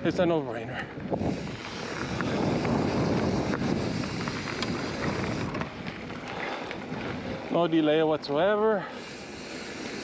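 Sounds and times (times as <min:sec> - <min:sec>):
wind on microphone: 0:00.0 - 0:07.5
bike tyres on dirt trail: 0:00.0 - 0:10.0.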